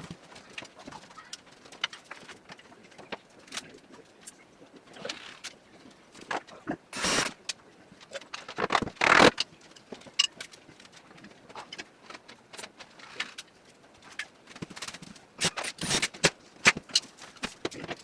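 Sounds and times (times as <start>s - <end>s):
loud scraping: 7.0s - 7.4s, 8.5s - 9.4s.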